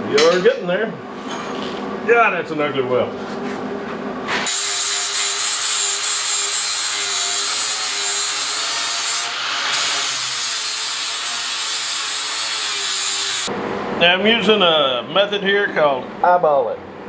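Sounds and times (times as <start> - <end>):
angle grinder grinding steel: 4.5 - 13.5.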